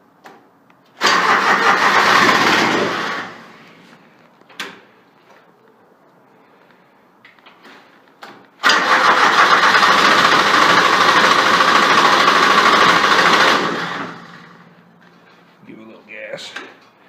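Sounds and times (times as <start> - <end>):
electric starter cranking diesel engine: 1.0 - 3.6, 8.6 - 14.6.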